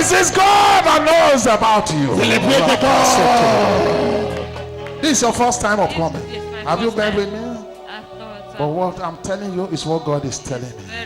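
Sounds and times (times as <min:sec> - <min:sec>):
preacher calling out: 0:00.0 - 0:04.5
church music sustained chord: 0:00.2 - 0:10.9.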